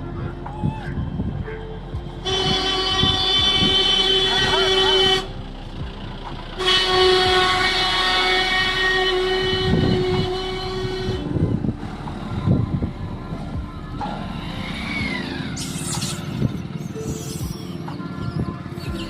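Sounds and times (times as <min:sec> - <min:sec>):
horn-like chord: 0:01.4 - 0:11.9
low thumps: 0:09.3 - 0:14.4.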